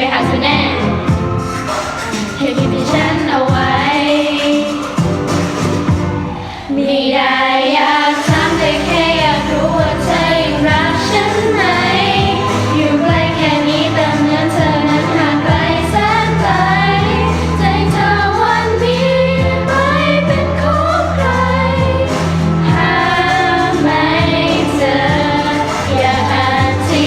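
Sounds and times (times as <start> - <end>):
choir singing pop song: 0.0 - 27.0
instrumental backing: 0.2 - 6.6, 8.3 - 27.0
sustained low bass notes: 8.3 - 27.0.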